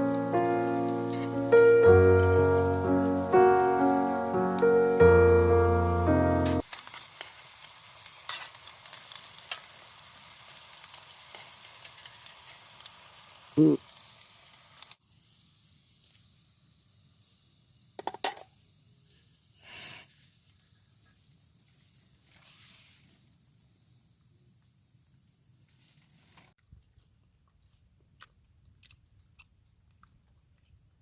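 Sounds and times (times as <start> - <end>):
food sizzling in a pan: 0.0 - 26.6
short hiss: 19.0 - 24.2.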